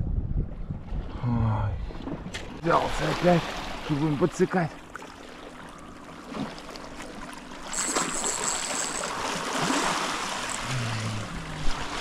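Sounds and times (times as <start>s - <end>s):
sea water splashing on rocks: 7.7s - 10.7s
thin high whine: 7.7s - 11.9s.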